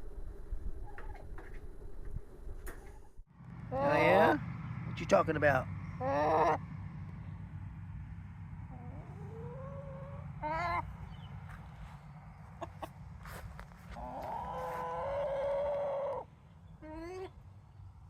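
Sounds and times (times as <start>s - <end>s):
steady low hum: 0.0s - 15.1s
chickens clucking: 3.7s - 4.4s, 6.0s - 6.7s, 8.7s - 11.3s, 12.4s - 13.1s, 13.9s - 17.3s
chicken held call: 6.0s - 6.6s, 8.7s - 10.9s, 14.0s - 16.2s.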